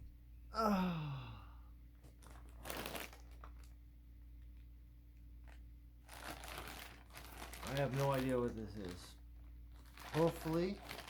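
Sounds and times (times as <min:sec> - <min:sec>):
packaging crinkling and tearing: 0:02.0 - 0:03.8, 0:05.4 - 0:11.0.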